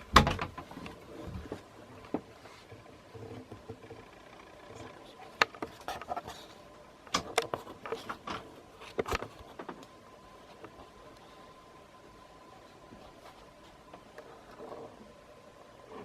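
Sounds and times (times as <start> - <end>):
faint steady hum: 0.0 - 16.0
sharp clicks and light knocks: 7.0 - 10.0.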